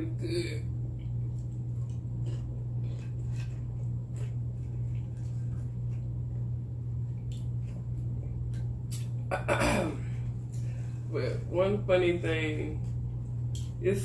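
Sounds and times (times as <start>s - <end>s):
chewing crunchy chips: 0.8s - 9.2s
wet mouth sounds: 8.5s - 9.2s.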